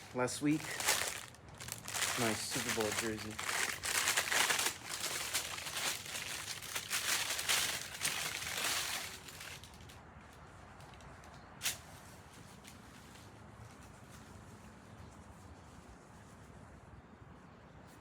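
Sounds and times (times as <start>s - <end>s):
packaging crinkling and rustling: 0.0s - 10.0s.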